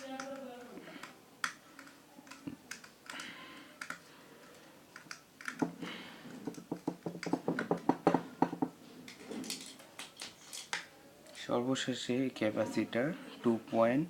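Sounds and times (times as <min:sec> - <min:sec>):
hands clicking on fan parts: 0:00.0 - 0:10.9.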